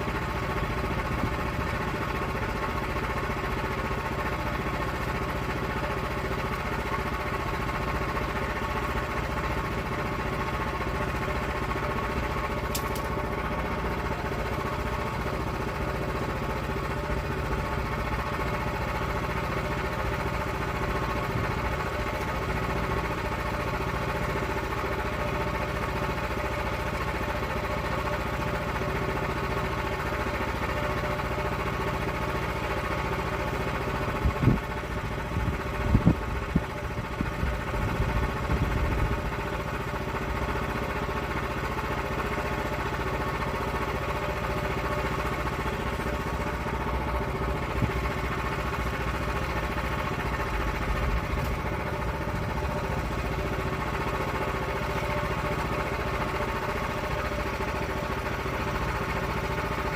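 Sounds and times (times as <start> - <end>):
sharp click: 12.7 - 13.1.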